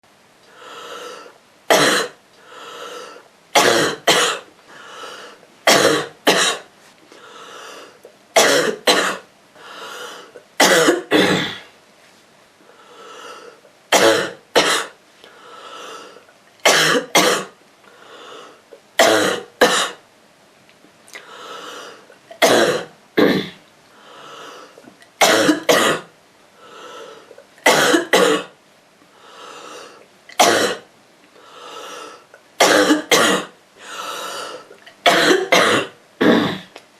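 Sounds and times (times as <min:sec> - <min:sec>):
girl coughing: 0:01.7 - 0:02.2, 0:03.6 - 0:04.4, 0:05.7 - 0:06.7, 0:08.4 - 0:09.2, 0:10.6 - 0:11.7, 0:13.9 - 0:15.0, 0:16.7 - 0:17.6, 0:22.4 - 0:23.6, 0:25.2 - 0:26.1, 0:27.7 - 0:28.5, 0:30.4 - 0:30.8, 0:32.6 - 0:33.5, 0:35.0 - 0:36.7.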